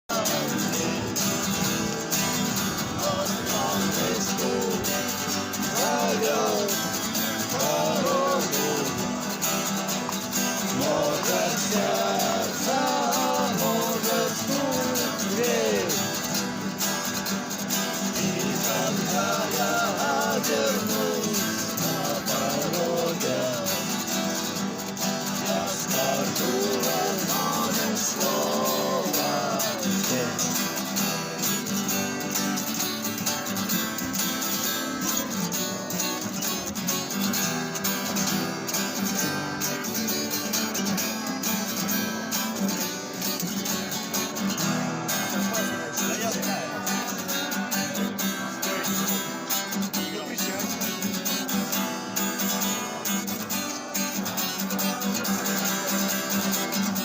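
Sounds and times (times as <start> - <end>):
person singing: 0.0 - 9.4, 10.5 - 16.4, 17.9 - 24.5, 25.2 - 32.1
strummed acoustic guitar: 0.0 - 57.0.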